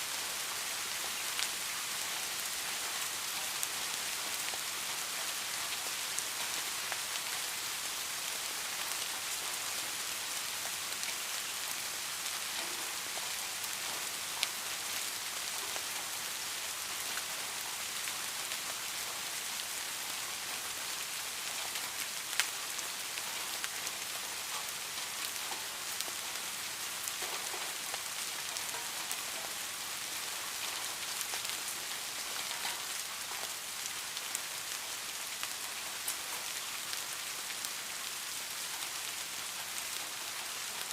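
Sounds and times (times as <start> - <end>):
steady rain falling: 0.0 - 40.9
sharp raindrop ticks: 32.3 - 33.5.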